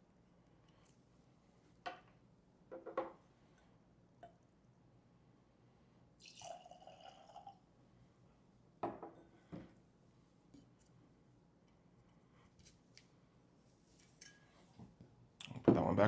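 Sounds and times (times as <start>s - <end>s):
glass knocking on a table: 2.7s - 3.2s, 8.8s - 9.6s
liquid pouring into a glass: 6.2s - 7.6s.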